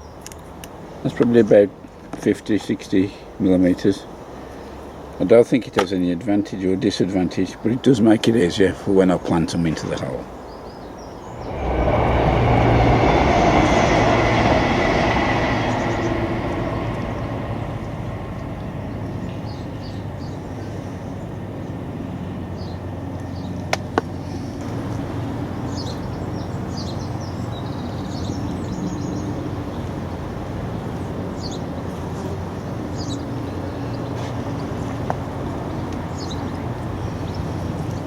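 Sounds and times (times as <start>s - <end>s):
distant vehicle rumble: 11.1s - 38.0s.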